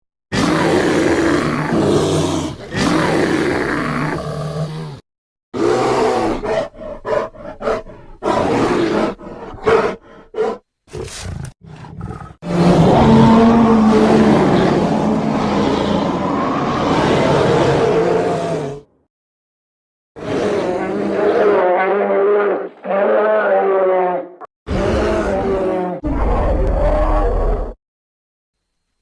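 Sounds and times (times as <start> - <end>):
bear grunts and growls: 0.3 - 5.0, 5.6 - 18.9, 20.2 - 27.8
bear roaring: 0.4 - 5.0, 5.6 - 18.9, 20.2 - 27.8.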